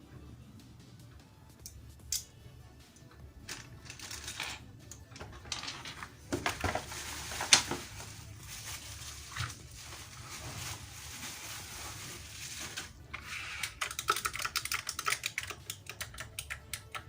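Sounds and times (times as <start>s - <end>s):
packaging rustling: 5.9s - 15.2s.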